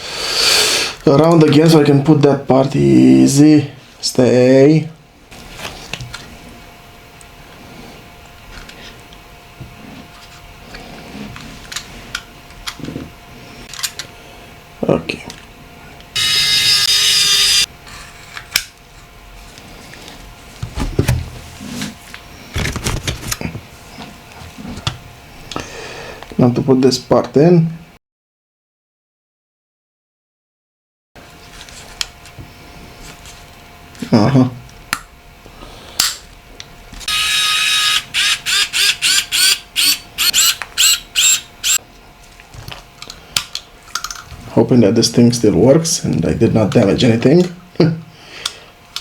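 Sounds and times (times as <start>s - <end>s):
squeaky ratcheting strokes: 16.2s - 17.7s, 37.1s - 41.8s
plastic and metal scraping: 22.6s - 23.5s.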